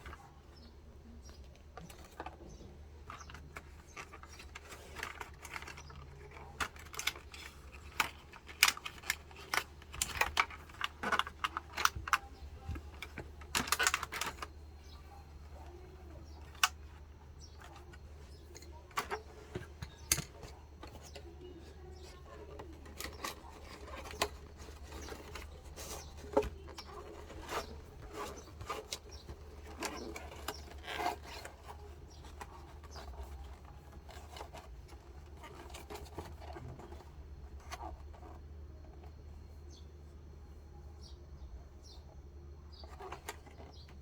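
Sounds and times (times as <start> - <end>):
small hard objects clicking and rattling: 1.8 - 15.0.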